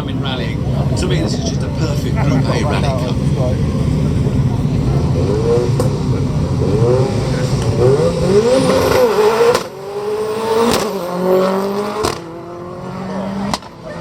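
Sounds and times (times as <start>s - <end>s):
rally car engine accelerating hard: 0.0s - 14.0s.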